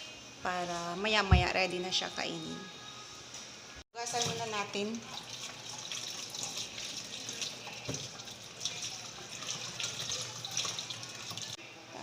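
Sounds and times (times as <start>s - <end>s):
water running from kitchen tap: 4.0s - 11.6s.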